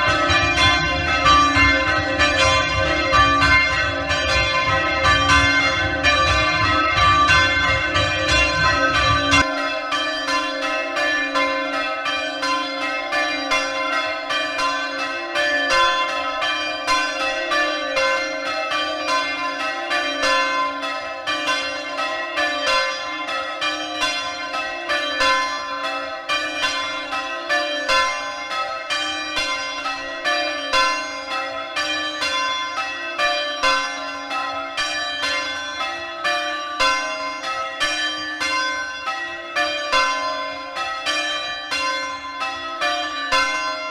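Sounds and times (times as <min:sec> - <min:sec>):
church bells ringing: 0:00.0 - 0:43.9.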